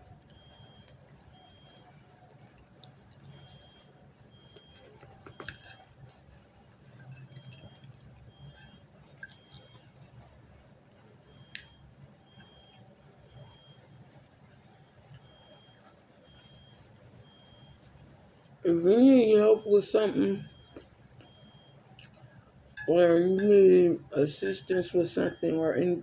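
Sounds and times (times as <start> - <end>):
chewing with mouth clicks: 0.3 - 6.3, 7.0 - 9.9, 11.3 - 12.8, 20.5 - 22.8.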